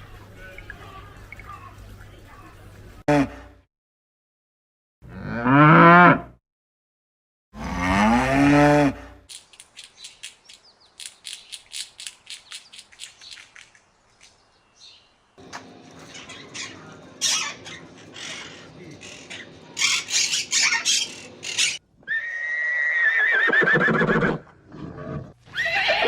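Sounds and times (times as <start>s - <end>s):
cow mooing: 5.0s - 6.4s, 7.6s - 9.2s.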